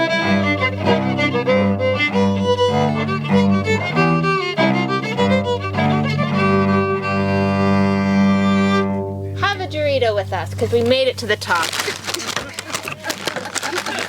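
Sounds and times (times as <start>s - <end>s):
fiddle playing a tune: 0.0s - 11.7s.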